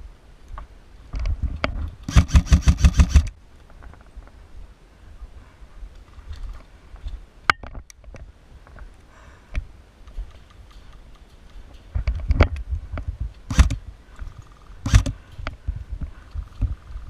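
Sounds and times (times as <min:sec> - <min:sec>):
sharp click: 0:01.6 - 0:03.4, 0:13.5 - 0:13.8, 0:14.8 - 0:15.2
airsoft gun full-auto burst: 0:02.1 - 0:03.3, 0:13.5 - 0:13.8, 0:14.8 - 0:15.2.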